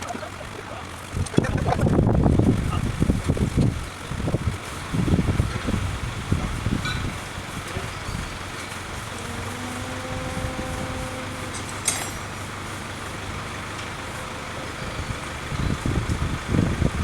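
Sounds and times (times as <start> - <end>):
engine idling: 0.0 - 17.0
faint steady whine: 6.9 - 16.2.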